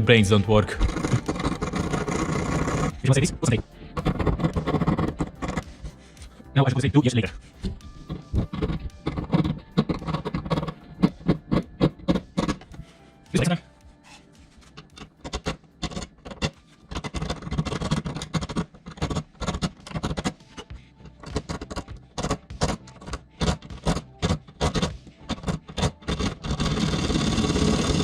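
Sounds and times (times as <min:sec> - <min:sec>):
hand tool scraping screw head: 0:00.5 - 0:28.0.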